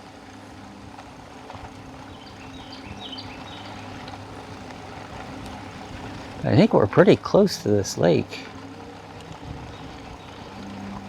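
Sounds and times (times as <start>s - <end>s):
electric bike motor hum: 0.0s - 11.0s
road noise: 0.0s - 11.0s
bird chirping: 2.1s - 4.1s, 9.7s - 10.6s.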